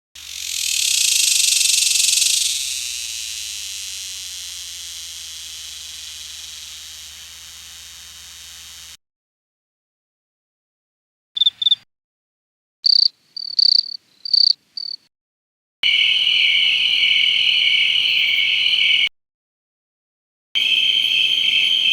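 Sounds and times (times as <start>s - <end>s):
insect buzzing: 0.2s - 9.0s.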